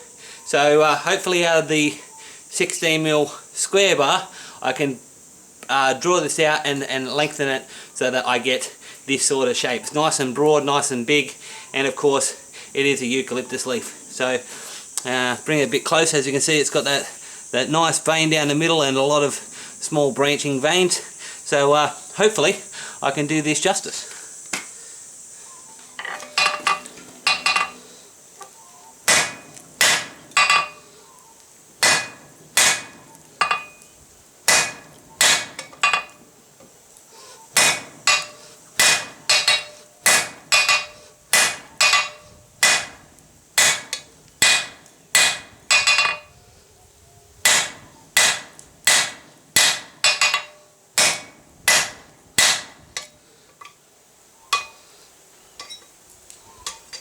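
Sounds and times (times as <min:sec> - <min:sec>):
hammer striking steel on anvil: 0:26.0 - 0:27.8, 0:29.1 - 0:30.9, 0:31.8 - 0:33.9, 0:34.5 - 0:36.2, 0:37.6 - 0:43.0, 0:43.6 - 0:46.3, 0:47.5 - 0:53.1, 0:54.5 - 0:54.8.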